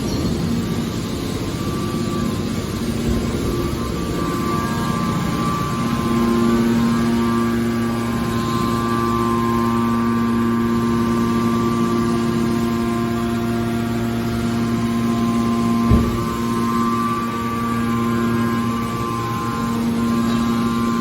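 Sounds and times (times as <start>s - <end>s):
hydraulic baler humming: 0.0s - 21.0s
short knock: 15.9s - 16.4s.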